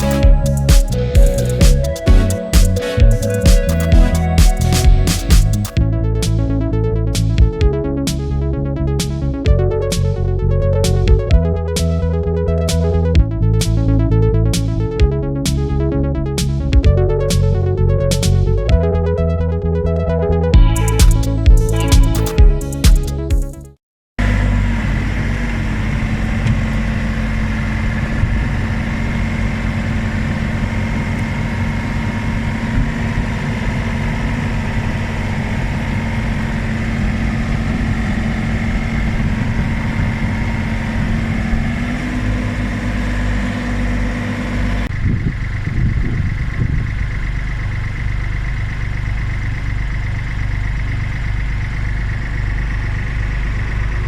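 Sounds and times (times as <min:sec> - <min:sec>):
diesel engine running: 0:00.0 - 0:09.2, 0:24.2 - 0:54.0.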